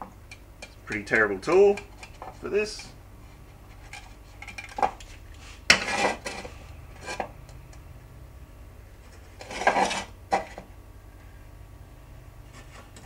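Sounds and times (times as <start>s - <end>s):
hand tool scraping plastic: 3.7s - 7.3s, 9.1s - 10.5s.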